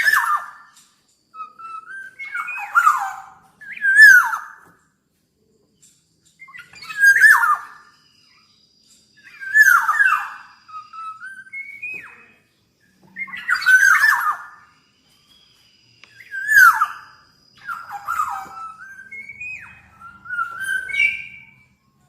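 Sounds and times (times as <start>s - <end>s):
oriole calling: 1.4s - 4.6s, 9.2s - 14.8s, 16.0s - 21.8s.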